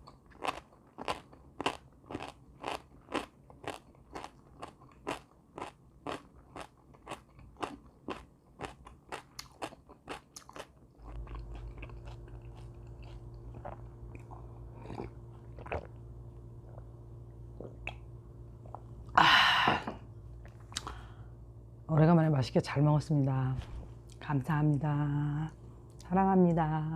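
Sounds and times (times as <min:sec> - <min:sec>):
chewing crunchy food: 0:00.0 - 0:16.0
steady low hum: 0:00.0 - 0:26.9.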